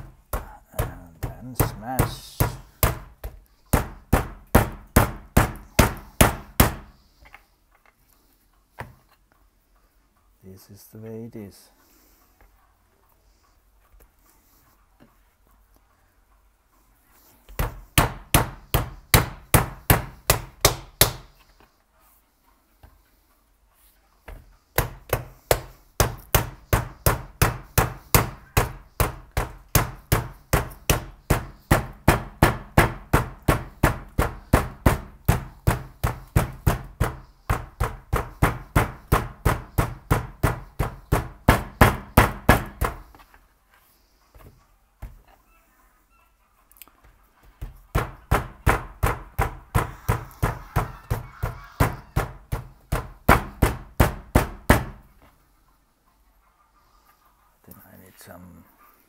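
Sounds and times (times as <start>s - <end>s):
butter being pounded: 0.0s - 7.0s, 17.6s - 21.4s, 24.3s - 43.2s, 47.6s - 55.1s.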